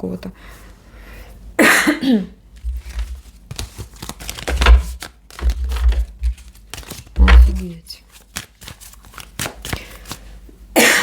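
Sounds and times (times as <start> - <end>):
cards knocking on table: 2.6 - 3.3, 4.4 - 6.5, 7.2 - 7.7
cards rustling and flicking: 2.6 - 10.4.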